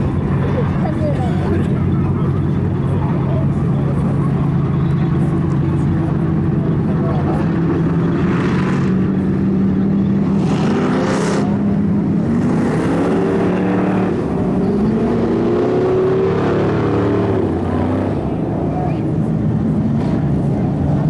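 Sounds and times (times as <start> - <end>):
race car engines passing: 0.0 - 21.0.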